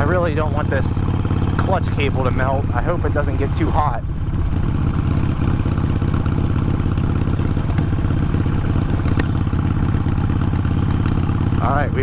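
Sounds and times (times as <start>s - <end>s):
motorcycle engine cruising: 0.0s - 12.0s.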